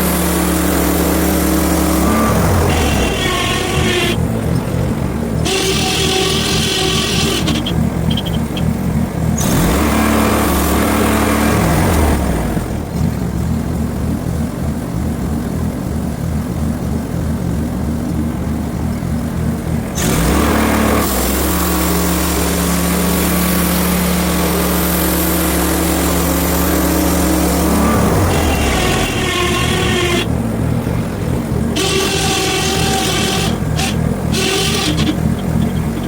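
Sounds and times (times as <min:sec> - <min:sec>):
band saw cutting log: 0:00.0 - 0:12.7, 0:19.9 - 0:36.0
small gas engine running: 0:00.0 - 0:36.0.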